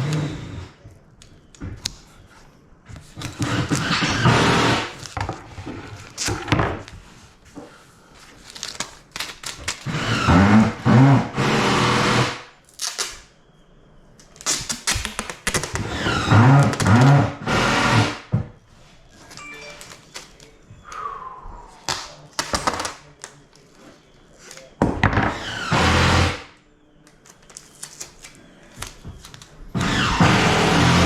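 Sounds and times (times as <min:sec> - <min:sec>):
power tool running: 0:03.4 - 0:05.0, 0:09.8 - 0:12.4, 0:15.8 - 0:18.2, 0:25.2 - 0:26.5, 0:29.8 - 0:31.0.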